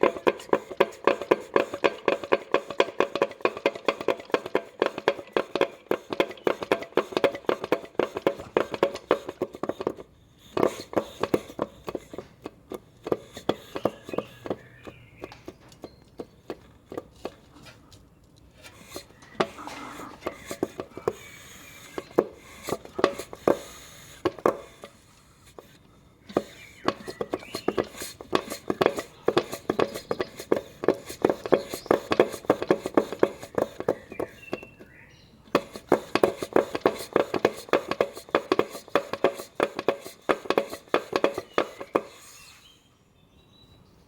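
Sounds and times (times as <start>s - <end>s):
rapid metallic engine knocking: 0.0s - 15.6s, 26.3s - 34.9s, 35.5s - 42.1s.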